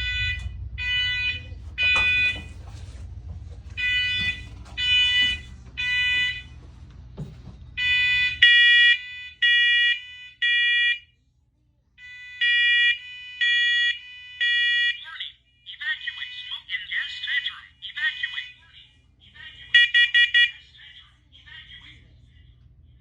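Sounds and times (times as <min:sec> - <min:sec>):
smoke alarm beeping: 0:00.0 - 0:02.6, 0:03.8 - 0:06.6, 0:07.8 - 0:11.1, 0:12.0 - 0:14.9.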